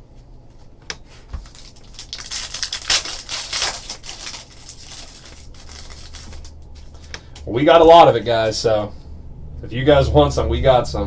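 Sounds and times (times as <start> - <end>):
wrapper crinkling and tearing: 1.4 - 7.1.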